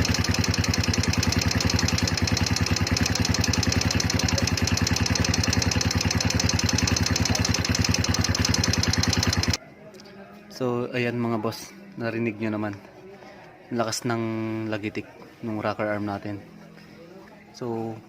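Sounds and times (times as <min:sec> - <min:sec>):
engine idling: 0:00.0 - 0:09.6
fast loud valve ticking: 0:00.0 - 0:09.6.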